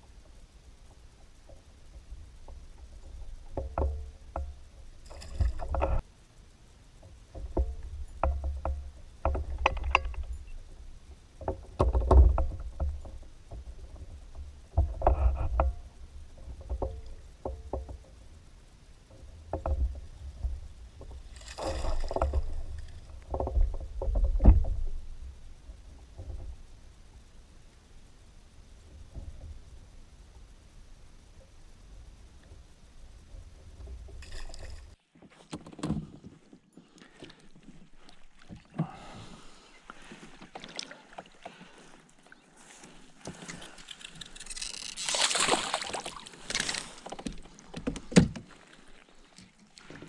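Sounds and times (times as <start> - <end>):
paddle knocking against hull: 0.9 - 6.0, 7.0 - 18.2, 19.1 - 26.7
paddle splashing in water: 36.4 - 50.0.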